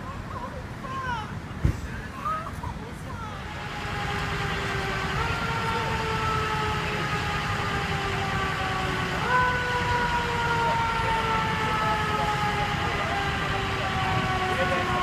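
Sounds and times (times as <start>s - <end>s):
engine and traffic rumble: 0.0s - 15.0s
emergency vehicle siren: 3.3s - 15.0s.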